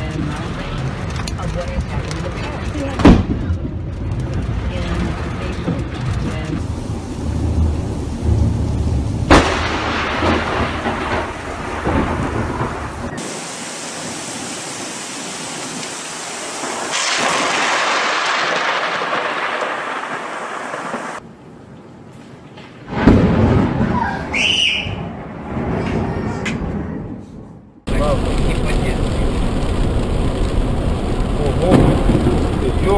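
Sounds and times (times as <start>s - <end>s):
rolling thunder rumble: 0.0s - 21.4s, 22.9s - 32.9s
sharp thunderclap: 2.8s - 4.6s, 5.9s - 21.2s, 22.9s - 24.1s, 27.9s - 32.9s
heavy rain hissing: 4.7s - 21.2s, 27.9s - 32.9s.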